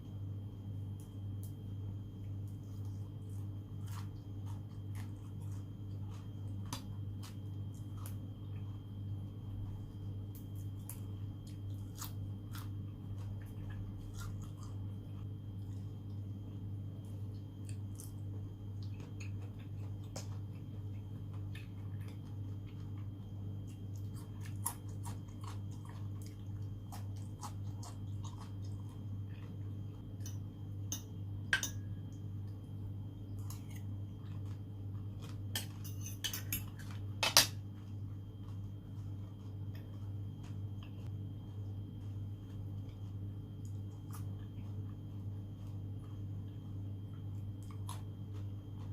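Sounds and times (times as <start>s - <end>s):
steady low hum: 0.0s - 48.9s
wet chewing: 2.3s - 16.4s, 17.1s - 30.4s, 36.6s - 48.9s.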